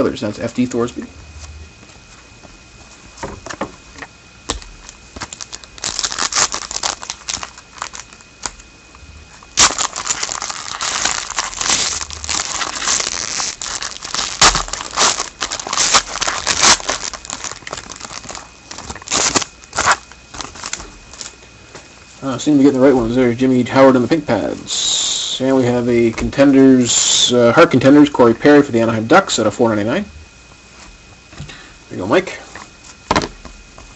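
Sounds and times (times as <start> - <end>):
wrapper crinkling and tearing: 4.8 - 8.6, 9.6 - 21.4.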